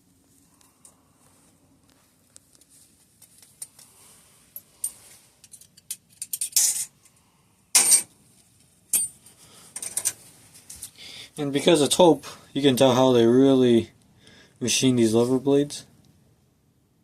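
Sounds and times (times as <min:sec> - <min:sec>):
metal parts clicking and clinking: 0:04.6 - 0:07.1, 0:07.8 - 0:08.1, 0:08.9 - 0:10.9
metal parts rattling: 0:04.8 - 0:06.9.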